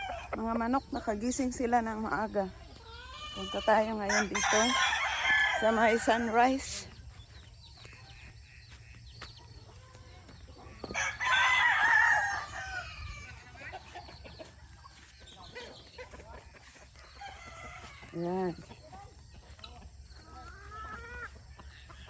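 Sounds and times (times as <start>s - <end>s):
rooster crowing: 0.0s - 0.4s, 2.9s - 6.9s, 10.8s - 13.9s, 17.0s - 18.6s
chickens clucking: 0.0s - 22.0s.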